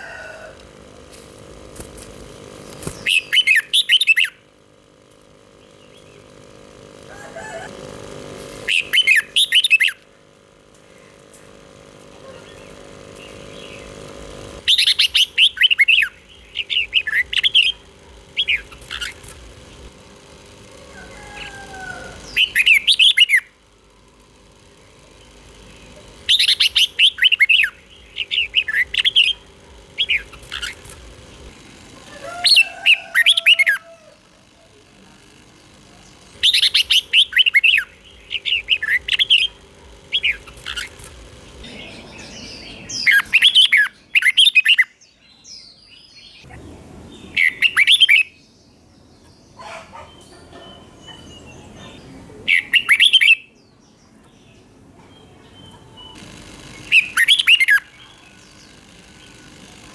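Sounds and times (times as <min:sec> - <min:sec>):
bird singing warbling phrases: 0:02.8 - 0:04.6, 0:12.2 - 0:19.9, 0:25.2 - 0:34.1, 0:36.0 - 0:59.7.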